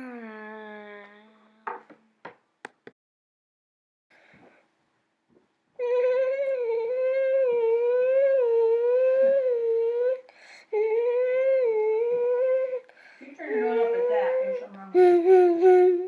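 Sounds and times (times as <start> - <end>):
child humming wavering tone: 0.0 - 1.6, 5.8 - 12.8, 15.0 - 16.0.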